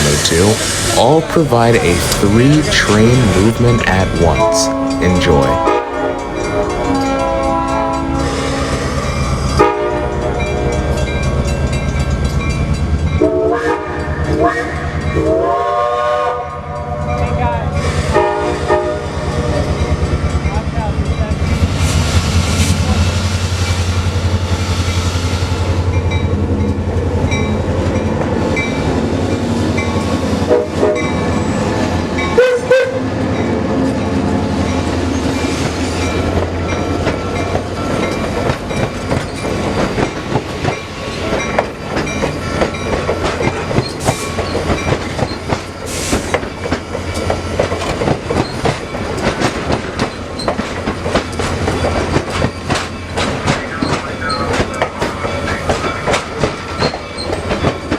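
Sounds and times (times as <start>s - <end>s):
train horn: 9.6s - 10.8s, 13.2s - 17.0s, 18.1s - 19.5s, 32.4s - 33.1s.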